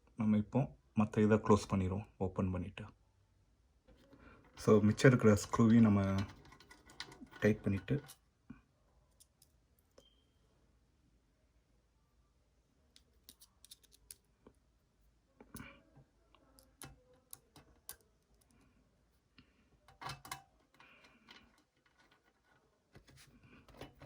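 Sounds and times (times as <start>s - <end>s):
screwdriver clicks and scrapes: 4.5s - 8.2s, 13.0s - 14.2s.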